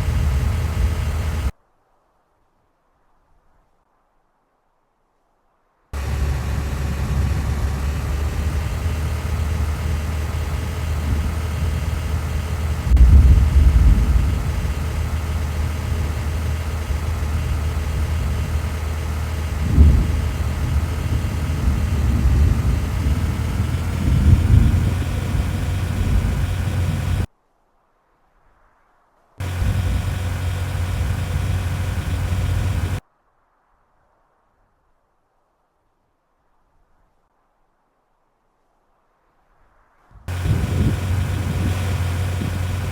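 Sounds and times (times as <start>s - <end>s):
road noise: 0.0s - 1.5s, 6.0s - 27.3s, 29.4s - 33.0s, 40.3s - 42.9s
vehicle engine rumble: 0.0s - 1.5s, 6.0s - 27.3s, 29.4s - 33.0s, 40.3s - 42.9s.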